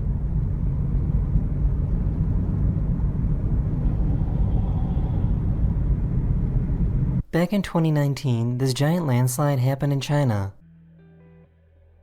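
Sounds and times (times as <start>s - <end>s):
car driving rumble: 0.0s - 7.2s.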